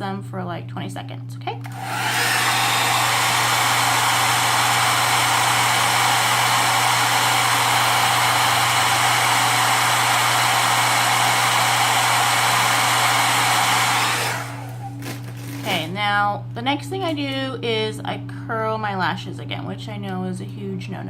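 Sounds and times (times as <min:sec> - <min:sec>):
hair dryer running: 0:01.6 - 0:15.9.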